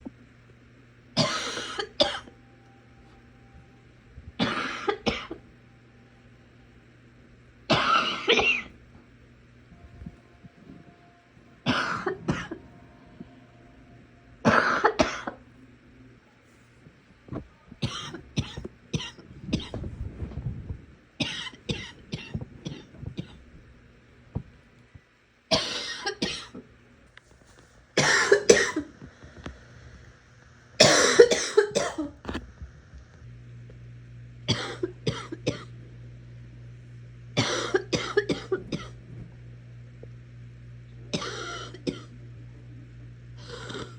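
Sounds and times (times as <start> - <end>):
person coughing harshly: 1.2 - 2.3, 4.4 - 5.4, 7.7 - 8.7, 11.7 - 12.6, 14.4 - 15.4, 17.8 - 19.8, 21.2 - 23.4, 25.5 - 26.6, 28.0 - 28.9, 30.8 - 32.2, 34.5 - 35.7, 37.4 - 39.0, 41.1 - 42.1, 43.4 - 43.9.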